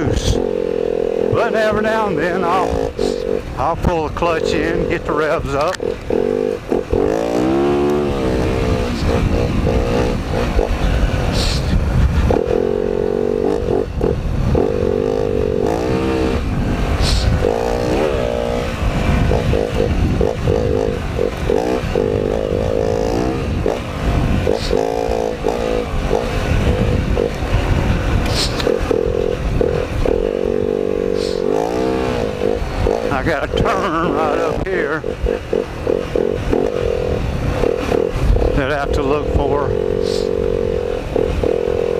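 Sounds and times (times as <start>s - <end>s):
dirt bike engine revving: 0.0s - 41.9s
sharp clicks: 5.6s - 6.1s.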